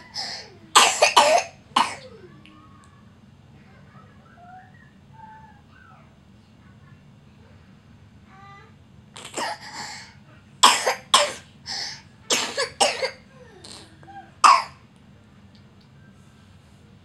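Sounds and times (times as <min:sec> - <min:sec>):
child coughing: 0:00.0 - 0:02.3, 0:09.2 - 0:14.8.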